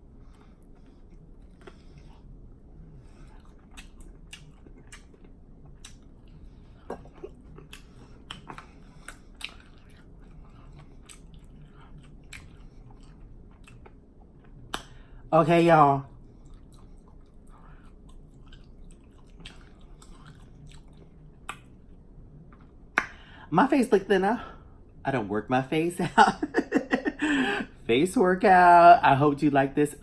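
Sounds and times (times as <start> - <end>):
person chewing with wet smacks: 0.2 - 15.1, 16.1 - 23.1.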